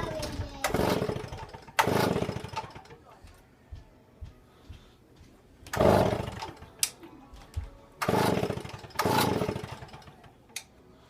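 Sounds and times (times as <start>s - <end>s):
chainsaw starter cord pulls: 0.6s - 2.9s, 5.7s - 6.7s, 8.0s - 10.2s
chainsaw engine bursts: 0.7s - 2.9s, 5.7s - 6.6s, 8.0s - 10.1s.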